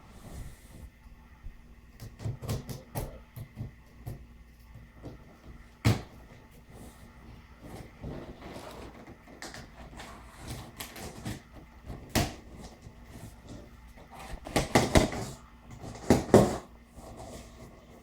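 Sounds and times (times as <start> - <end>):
cardboard box rustling and scraping: 6.6 - 18.0.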